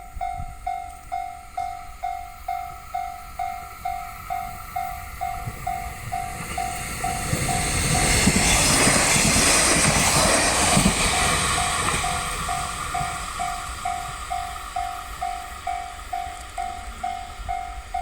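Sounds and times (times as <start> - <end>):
train rumbling and clattering: 0.0 - 18.0.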